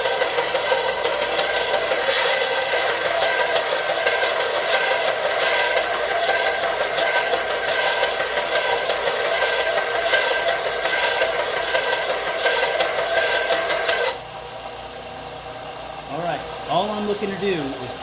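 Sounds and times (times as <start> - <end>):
belt sander grinding steel: 0.0 - 14.2.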